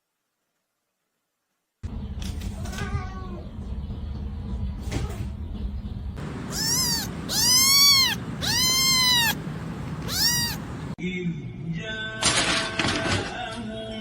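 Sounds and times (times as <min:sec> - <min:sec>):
cat meowing: 0:06.2 - 0:11.0.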